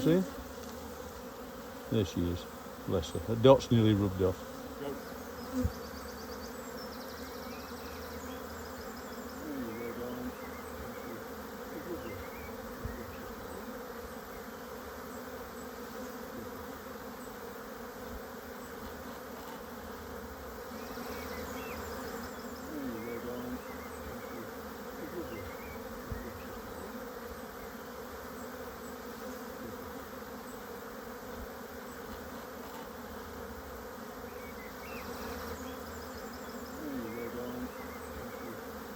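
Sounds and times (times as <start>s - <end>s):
honeybees buzzing: 0.0s - 38.9s.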